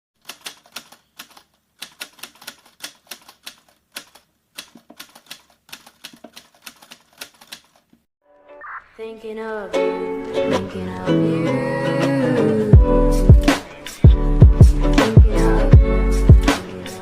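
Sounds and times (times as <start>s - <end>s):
typewriter key clicks: 0.2s - 7.8s.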